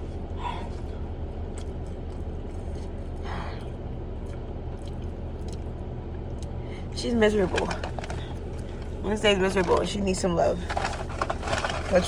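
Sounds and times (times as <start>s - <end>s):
car idling heard inside: 0.0s - 12.0s.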